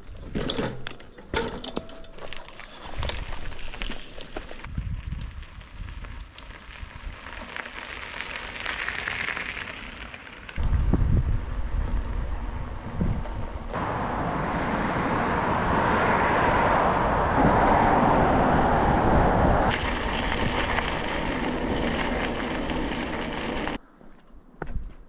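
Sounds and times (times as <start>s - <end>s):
wind buffeting microphone: 4.6s - 7.4s, 10.6s - 23.8s.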